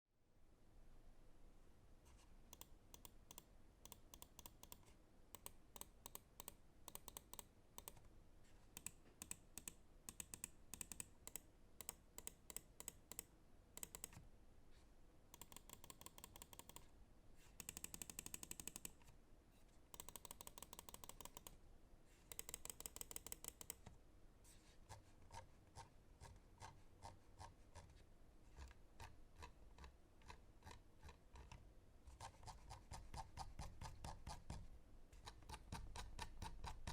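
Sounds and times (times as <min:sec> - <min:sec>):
mouse buttons clicking: 0:02.5 - 0:04.8, 0:05.4 - 0:08.0.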